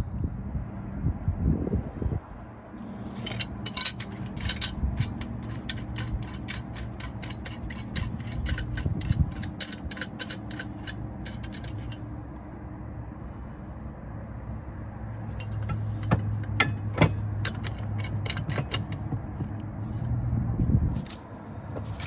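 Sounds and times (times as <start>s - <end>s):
low steady hum: 0.0s - 22.0s
metallic tool clicks and clinks: 3.2s - 12.0s, 15.4s - 19.1s.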